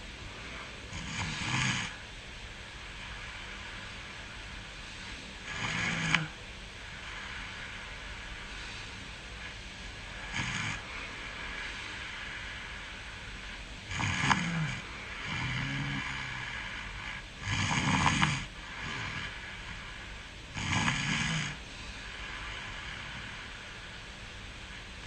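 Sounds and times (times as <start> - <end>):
soft breathing: 0.0 - 25.0
steady hiss: 0.0 - 25.0
person snoring: 0.4 - 2.0, 5.0 - 6.4, 9.4 - 12.9, 13.9 - 24.0.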